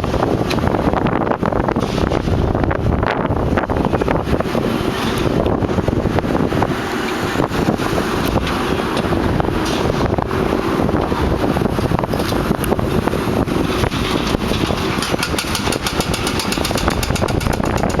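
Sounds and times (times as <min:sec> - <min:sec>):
demolition machine engine rumbling: 0:00.0 - 0:18.0
repeated hammering impacts: 0:13.7 - 0:18.0
knocks: 0:15.0 - 0:18.0.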